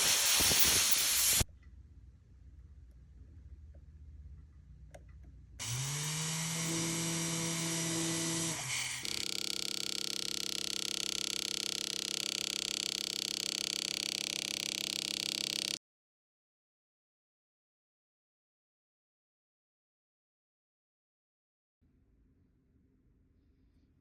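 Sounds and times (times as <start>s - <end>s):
power tool motor whining: 5.6s - 15.8s.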